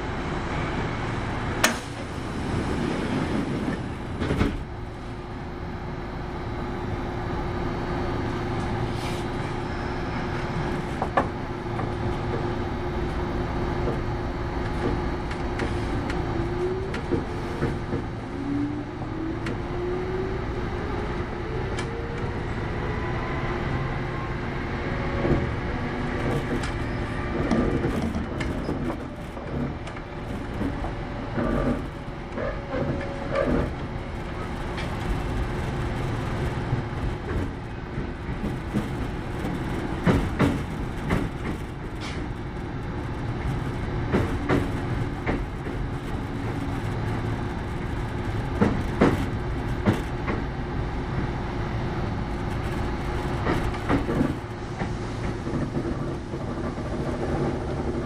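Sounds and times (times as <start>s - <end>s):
train running rumble: 0.0s - 58.0s
knocks from rails: 38.2s - 42.3s, 48.6s - 50.5s.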